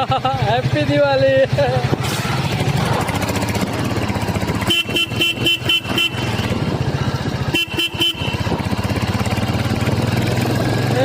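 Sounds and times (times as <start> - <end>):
motorcycle engine running: 0.0 - 11.0
vehicle horn rapid beeps: 4.5 - 6.6, 7.4 - 8.6.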